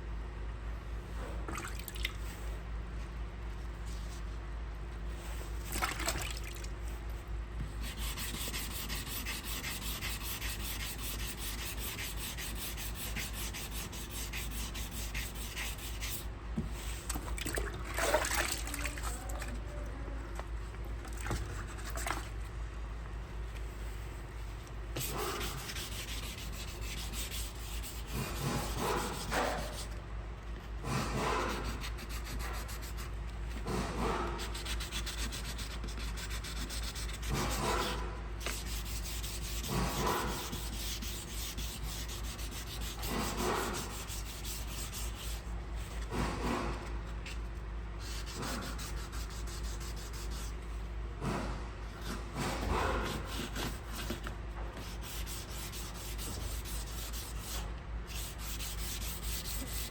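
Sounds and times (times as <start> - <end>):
sanding rasping on bumper: 7.8 - 16.3, 25.0 - 29.9, 34.0 - 45.5, 48.0 - 50.6, 54.8 - 59.9.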